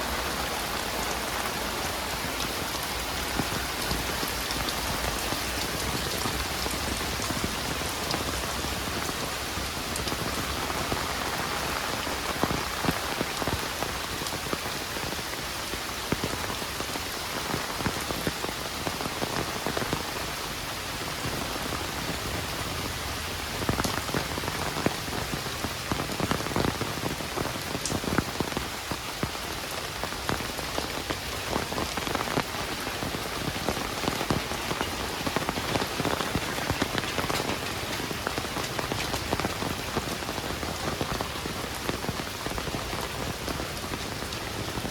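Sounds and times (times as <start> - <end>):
heavy rain hiss: 0.0 - 44.9
raindrops ticking close by: 0.0 - 44.9.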